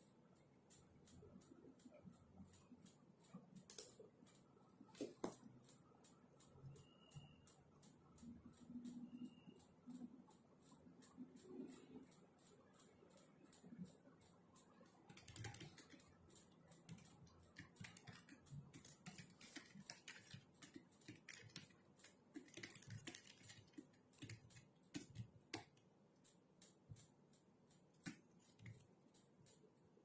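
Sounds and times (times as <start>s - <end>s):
keyboard key clicks: 15.0s - 25.8s.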